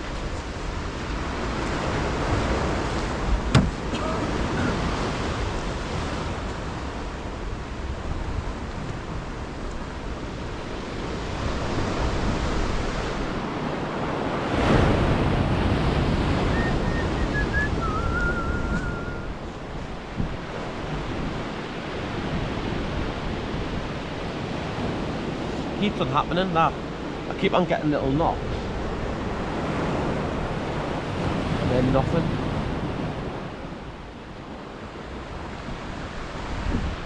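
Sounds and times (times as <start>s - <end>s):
wind buffeting microphone: 0.0s - 26.0s, 26.7s - 37.0s
sea waves washing ashore: 0.0s - 37.0s
sharp knock: 3.5s - 3.8s
faint high whistle: 16.4s - 19.4s.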